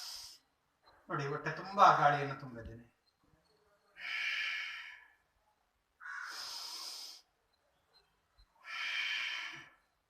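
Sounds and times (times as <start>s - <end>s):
deep breaths: 0.0s - 0.6s, 6.0s - 7.4s.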